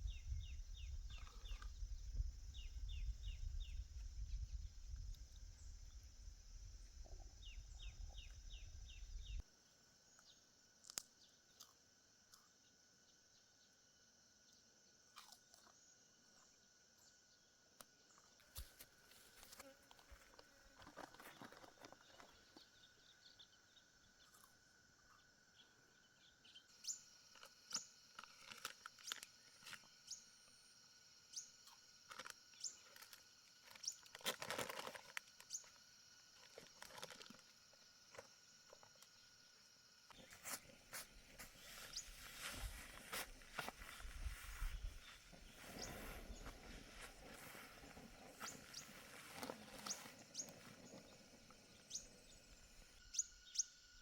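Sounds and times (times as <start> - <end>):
clicks and crunching rustles: 32.0 - 35.7, 36.4 - 39.1.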